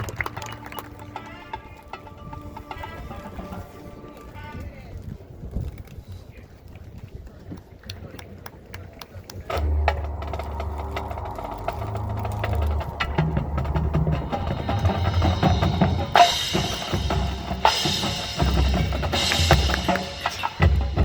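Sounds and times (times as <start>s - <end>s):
marching band playing: 0.0s - 4.3s, 9.5s - 21.0s
cymbal crashes: 9.6s - 21.0s.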